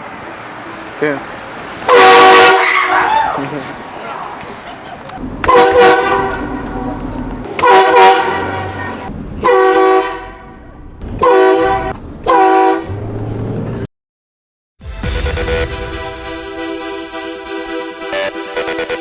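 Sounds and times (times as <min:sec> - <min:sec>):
road noise: 0:00.0 - 0:13.9, 0:14.9 - 0:19.0
air train horn blasts: 0:01.9 - 0:03.1, 0:05.4 - 0:06.9, 0:07.6 - 0:10.6, 0:11.2 - 0:13.0.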